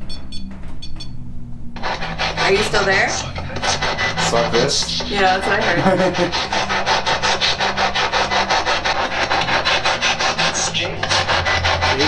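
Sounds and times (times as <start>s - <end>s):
pulsing radio static: 1.8s - 12.0s.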